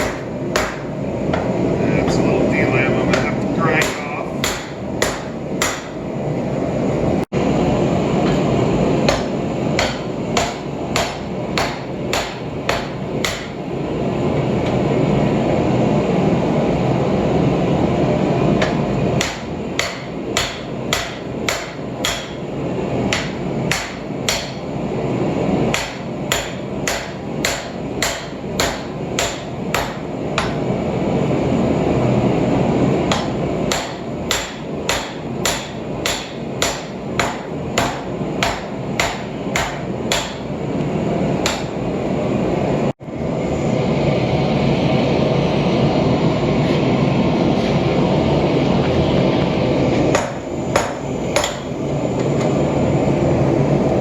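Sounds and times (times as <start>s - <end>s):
hammer striking hot steel: 0.0s - 6.2s, 8.2s - 13.8s, 18.5s - 31.0s, 33.0s - 42.0s, 50.1s - 52.6s.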